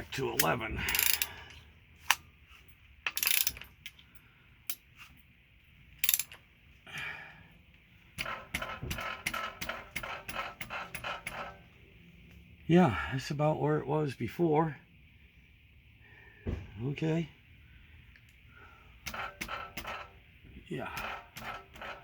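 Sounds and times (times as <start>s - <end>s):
ratchet wrench clicking: 0.4s - 1.5s, 3.0s - 4.0s, 6.0s - 6.4s.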